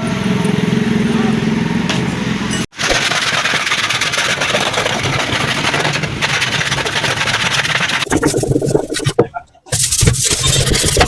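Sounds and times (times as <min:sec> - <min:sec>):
small motor rattling: 0:02.8 - 0:08.0.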